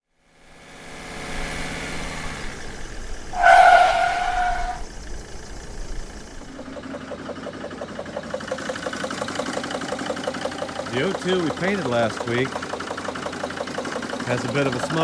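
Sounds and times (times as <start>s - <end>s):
diesel engine idling: 0.7s - 15.0s
engine ticking clatter: 4.8s - 15.0s.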